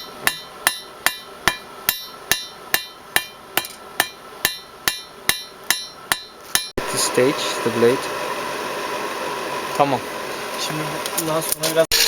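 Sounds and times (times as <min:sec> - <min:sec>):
hammer blows on anvil: 0:00.0 - 0:06.8.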